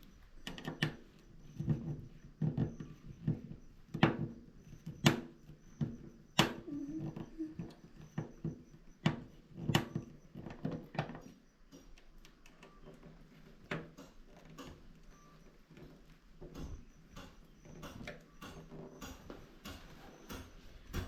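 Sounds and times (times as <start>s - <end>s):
metal hardware knocking and clicking: 16.5s - 21.0s.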